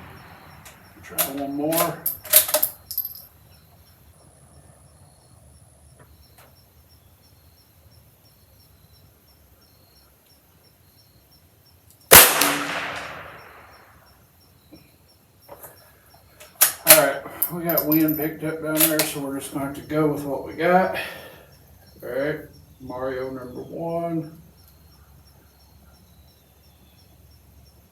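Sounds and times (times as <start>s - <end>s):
rifle shot: 0.0s - 2.7s, 12.1s - 14.0s.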